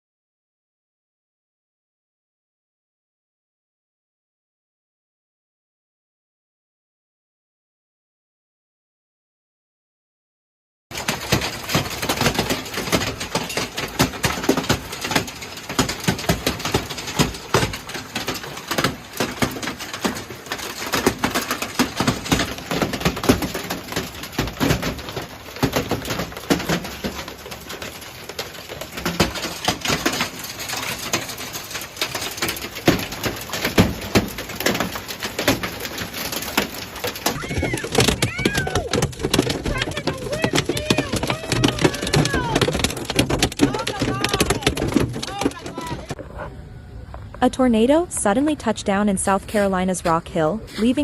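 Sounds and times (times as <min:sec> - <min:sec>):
hailstones clattering on hard surfaces: 0:10.9 - 0:46.2.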